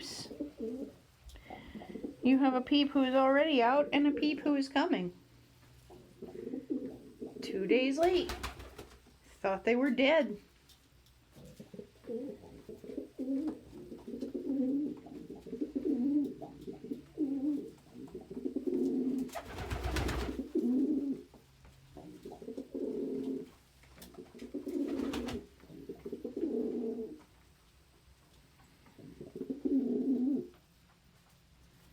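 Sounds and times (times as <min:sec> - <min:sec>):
pigeons cooing: 0:00.0 - 0:02.3, 0:05.9 - 0:08.7, 0:11.3 - 0:27.2, 0:28.9 - 0:30.6.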